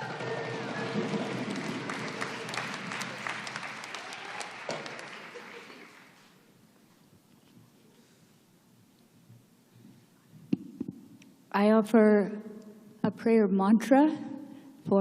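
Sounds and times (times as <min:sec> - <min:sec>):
audience applauding: 0:00.0 - 0:06.4.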